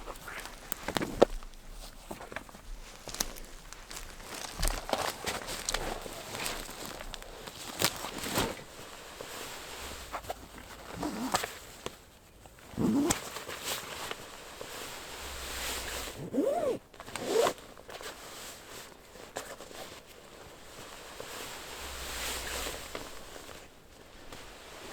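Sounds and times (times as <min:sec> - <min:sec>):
rustling and handling: 0:00.0 - 0:24.9
zip-like rasps: 0:11.0 - 0:11.4, 0:12.8 - 0:13.2, 0:15.2 - 0:17.6, 0:21.8 - 0:23.2.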